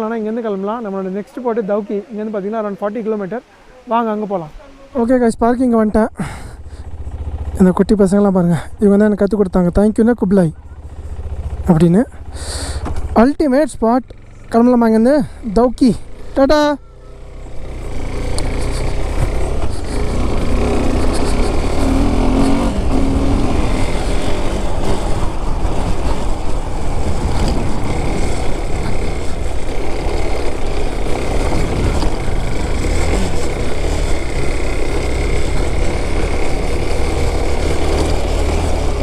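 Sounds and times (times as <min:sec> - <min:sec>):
motorcycle engine running: 0:06.1 - 0:39.0
wind rush on microphone: 0:22.6 - 0:32.8.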